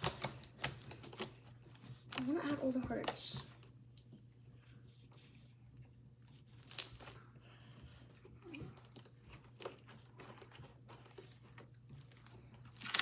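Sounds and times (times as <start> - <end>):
hands squishing crackling slime: 0.0 - 7.5.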